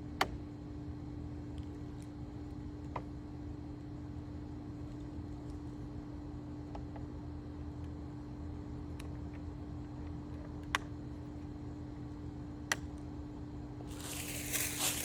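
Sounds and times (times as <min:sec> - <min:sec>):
steady low hum: 0:00.0 - 0:15.0
rustling: 0:13.9 - 0:15.0.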